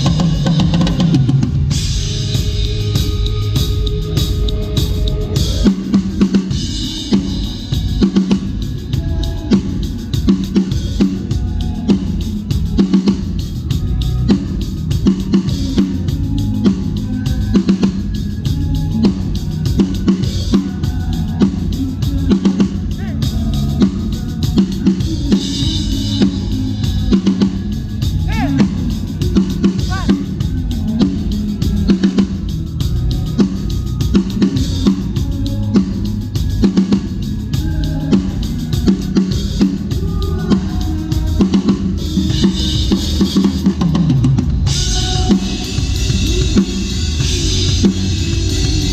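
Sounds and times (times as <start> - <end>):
band music: 0.0 - 48.9
drum kit playing: 0.0 - 48.9.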